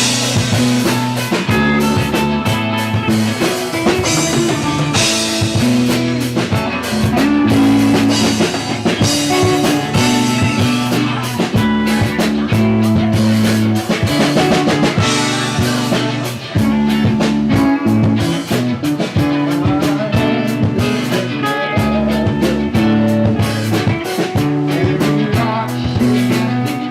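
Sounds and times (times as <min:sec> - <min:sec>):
held low notes: 0:00.0 - 0:24.0
drum kit: 0:00.0 - 0:26.9
guitar: 0:00.0 - 0:26.9.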